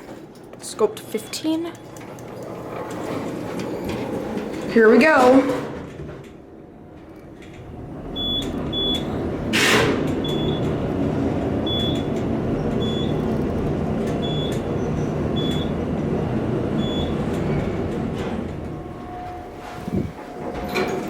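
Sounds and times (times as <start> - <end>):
elevator car rumbling: 0.0 - 21.0
loud rush of air: 18.9 - 20.4.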